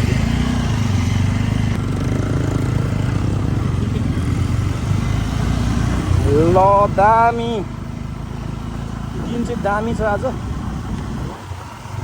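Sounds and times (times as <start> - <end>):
motorcycle engine running: 0.0 - 12.0
road noise: 0.0 - 12.0
rushing wind: 0.0 - 12.0.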